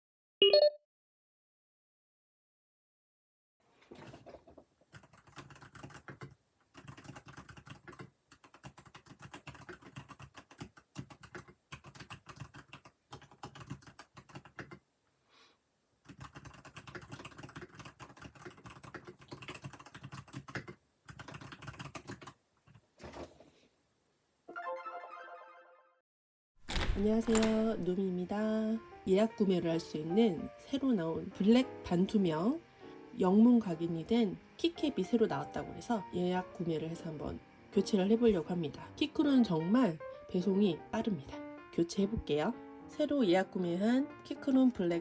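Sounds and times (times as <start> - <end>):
mechanical keyboard typing: 4.9 - 14.8, 16.0 - 22.8, 26.7 - 28.0.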